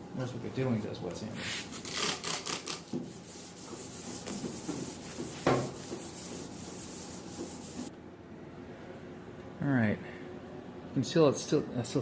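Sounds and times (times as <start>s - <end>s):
sandpaper rubbing strokes: 3.0s - 7.9s.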